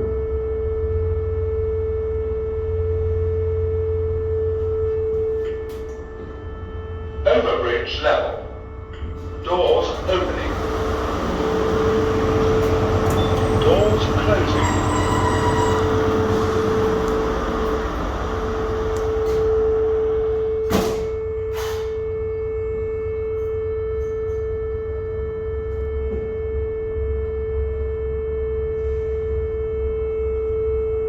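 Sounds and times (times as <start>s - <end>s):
lift steady single-pitched tone: 8.4s - 25.7s.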